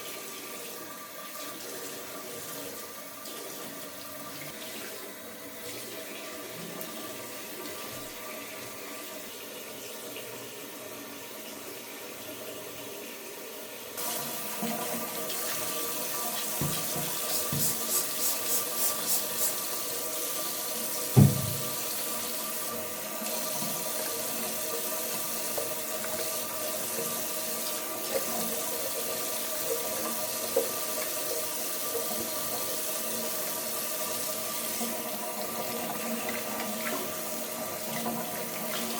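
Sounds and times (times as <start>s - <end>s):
tap water running into sink: 14.0s - 38.9s
sharp knock: 21.2s - 21.7s.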